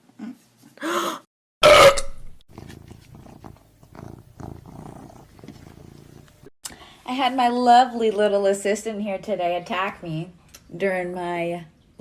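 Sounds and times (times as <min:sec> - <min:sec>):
cat purring: 0:02.5 - 0:06.5.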